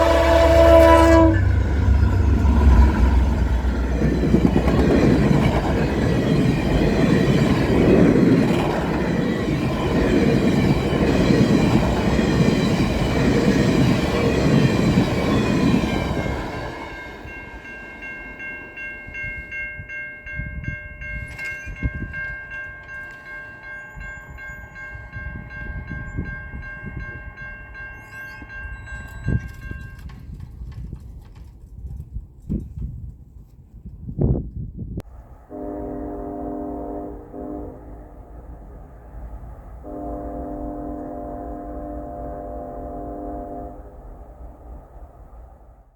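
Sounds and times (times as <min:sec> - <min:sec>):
distant train horn chord: 0:00.0 - 0:06.9, 0:35.1 - 0:44.8
locomotive bell off-sounding tone: 0:00.0 - 0:30.4
passenger train passing: 0:00.0 - 0:31.6, 0:35.0 - 0:45.9.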